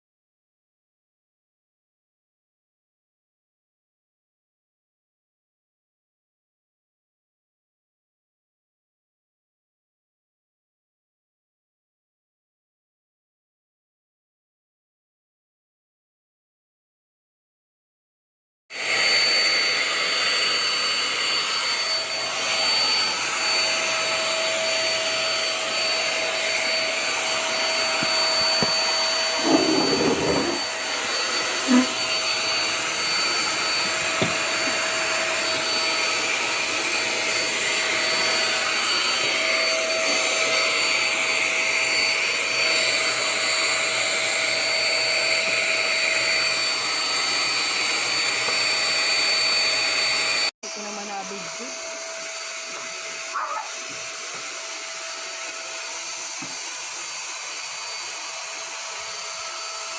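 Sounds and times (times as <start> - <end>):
handheld vacuum cleaner running: 18.7 - 59.9.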